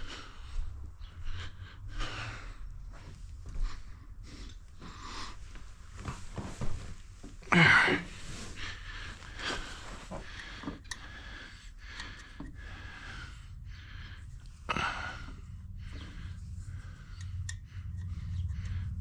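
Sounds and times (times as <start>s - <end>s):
low steady hum: 0.0s - 19.0s
breathy sigh: 7.5s - 8.8s.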